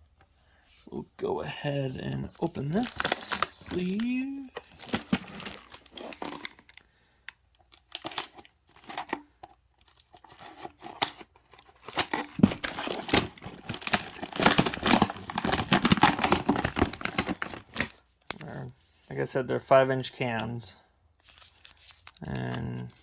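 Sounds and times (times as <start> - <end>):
wrapping crackling and tearing: 2.1 - 6.8, 7.5 - 18.5, 21.2 - 23.0.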